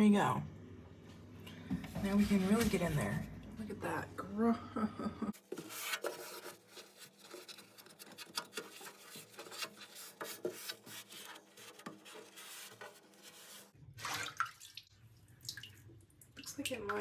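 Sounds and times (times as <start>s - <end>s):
scratchy scrubbing strokes: 5.4s - 13.8s.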